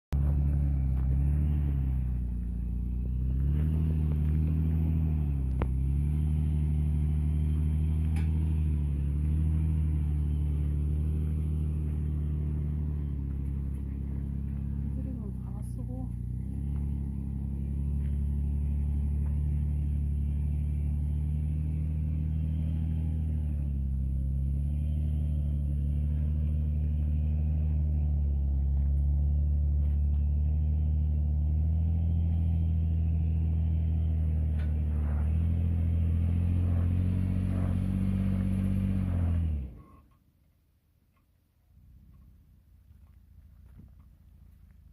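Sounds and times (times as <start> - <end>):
vehicle engine running: 0.0 - 44.9.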